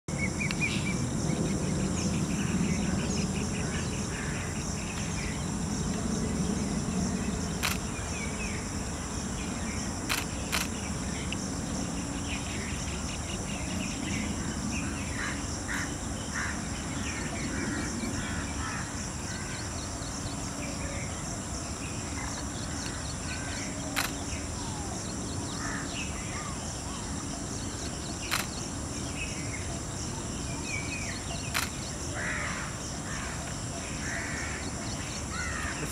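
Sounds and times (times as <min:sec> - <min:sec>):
high insect drone: 0:00.1 - 0:35.9
sharp clicks: 0:07.6 - 0:08.0, 0:10.1 - 0:10.8, 0:23.9 - 0:24.3, 0:28.3 - 0:28.6, 0:31.5 - 0:31.8
small birds chirping: 0:16.8 - 0:35.9.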